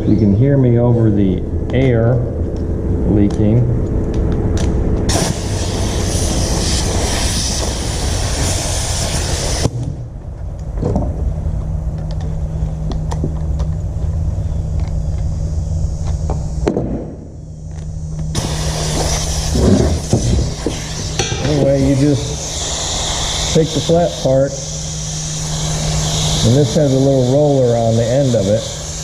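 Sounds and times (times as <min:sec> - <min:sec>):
steady low hum: 0:00.0 - 0:29.0
compressed air hissing: 0:05.1 - 0:09.8, 0:18.0 - 0:29.0.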